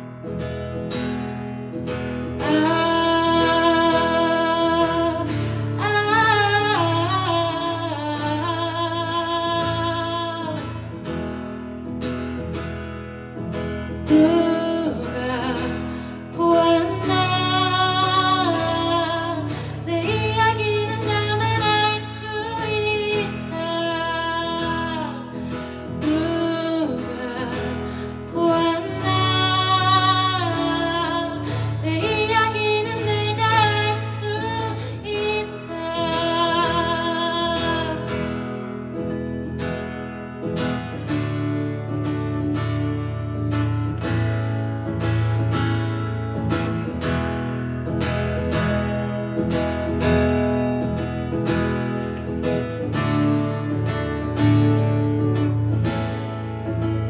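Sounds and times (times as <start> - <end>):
strummed acoustic guitar: 0.0 - 57.0
woman singing: 1.9 - 11.2, 13.9 - 38.7.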